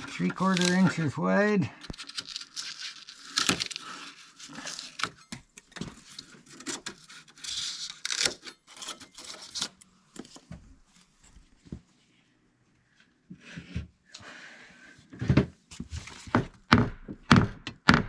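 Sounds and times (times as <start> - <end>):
styrofoam crackling: 0.1 - 1.0, 1.9 - 5.0.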